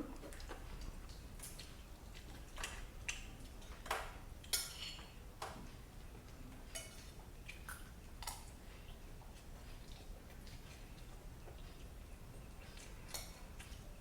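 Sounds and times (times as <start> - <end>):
utensils clinking against plate: 4.5 - 5.2.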